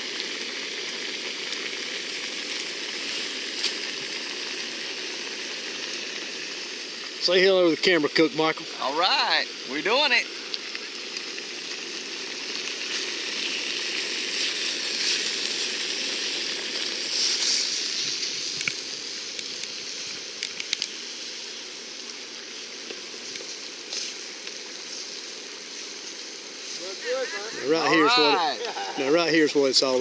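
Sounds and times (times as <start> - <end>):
vegetables sizzling in a pan: 0.0 - 30.0
sharp pops: 2.4 - 4.1, 12.6 - 21.0.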